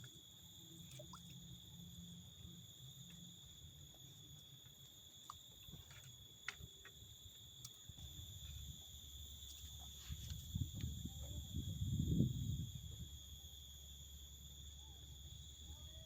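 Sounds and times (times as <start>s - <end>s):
high-pitched insect drone: 0.0s - 16.0s
small ticks: 0.8s - 1.5s, 2.4s - 11.4s.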